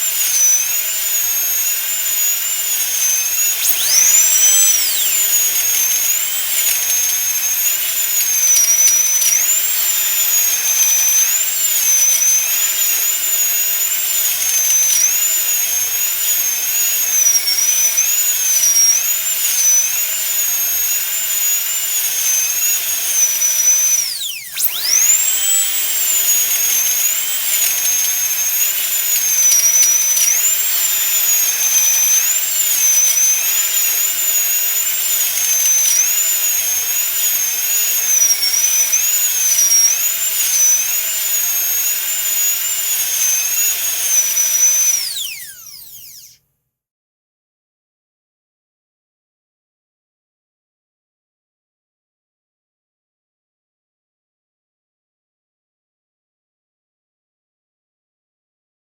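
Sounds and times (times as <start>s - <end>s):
piercing wobbling whine: 2.7s - 7.6s.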